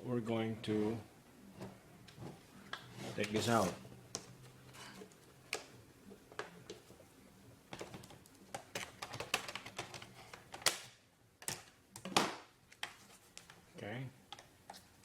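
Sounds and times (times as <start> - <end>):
plastic laptop casing clicks: 7.8 - 13.0.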